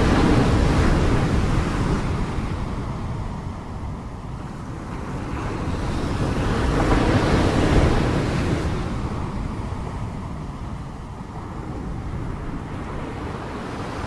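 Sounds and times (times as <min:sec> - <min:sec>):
sea surf washing ashore: 0:00.0 - 0:14.0.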